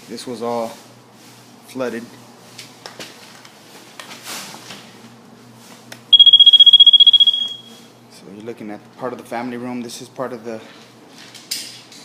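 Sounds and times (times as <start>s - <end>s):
high-pitched warbling electronic beep: 6.2s - 7.7s.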